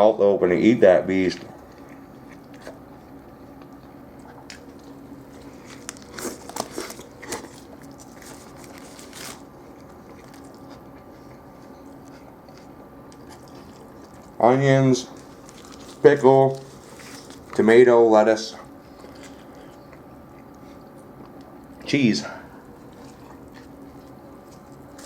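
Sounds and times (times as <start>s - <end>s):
steady low hum: 0.0s - 25.0s
burger being bitten into: 4.3s - 14.4s.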